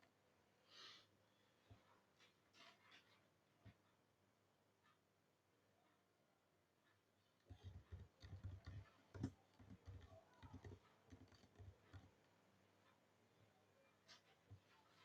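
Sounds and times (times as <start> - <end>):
typing on keyboard: 7.4 - 12.2.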